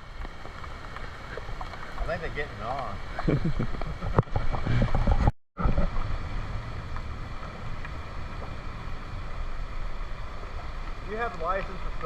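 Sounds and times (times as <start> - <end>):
wind on microphone: 0.0 - 12.0
river water rushing: 5.9 - 12.0.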